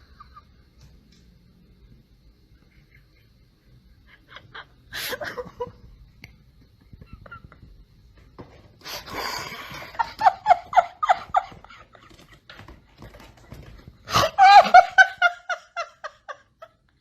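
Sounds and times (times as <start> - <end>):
person laughing hard: 4.1 - 5.8, 9.0 - 12.7, 14.1 - 16.9.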